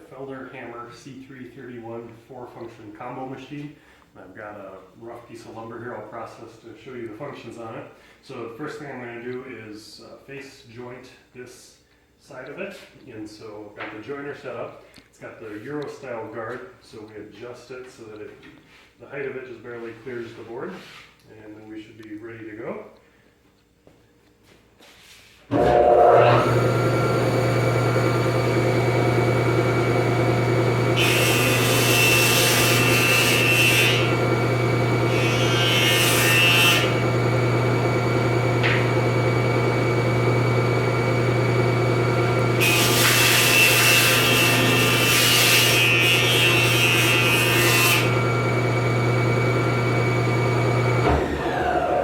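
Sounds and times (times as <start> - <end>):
board being cut on jointer: 25.5 - 52.0
jointer motor humming: 25.5 - 52.0.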